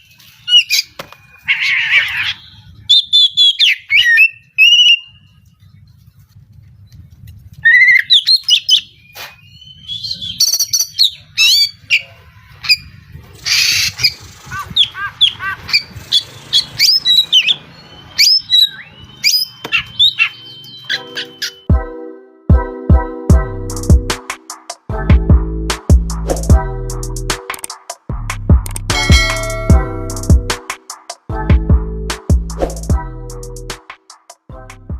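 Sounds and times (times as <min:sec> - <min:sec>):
bird singing whistles and trills: 0:02.3 - 0:05.4, 0:07.6 - 0:12.9, 0:13.5 - 0:21.7
harsh rasping bird call: 0:11.4 - 0:21.7.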